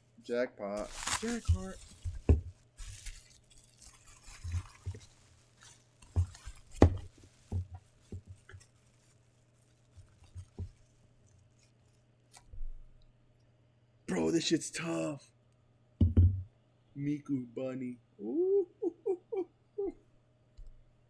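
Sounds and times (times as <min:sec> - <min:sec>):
packaging rustling: 0:00.8 - 0:12.5.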